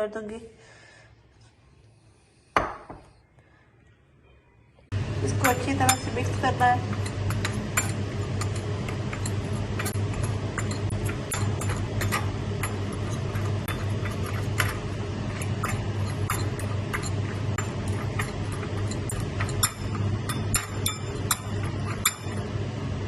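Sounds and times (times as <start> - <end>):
steady low hum: 4.8 - 23.0.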